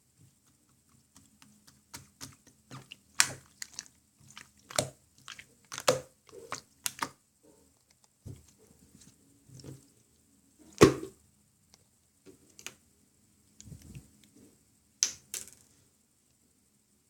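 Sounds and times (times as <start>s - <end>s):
slime squishing: 0.2s - 7.2s
slime popping: 1.9s - 7.1s.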